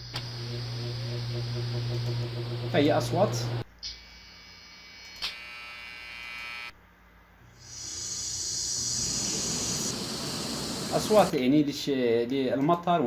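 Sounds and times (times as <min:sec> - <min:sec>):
buzzing electronic tone: 0:03.8 - 0:06.7, 0:07.6 - 0:11.3
steady high-pitched hiss: 0:07.6 - 0:11.4.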